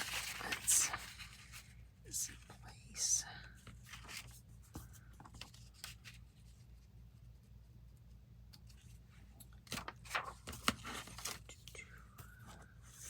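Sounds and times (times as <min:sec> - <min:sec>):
low steady hum: 0:00.0 - 0:13.0
paper rustling and clicks: 0:09.4 - 0:11.5.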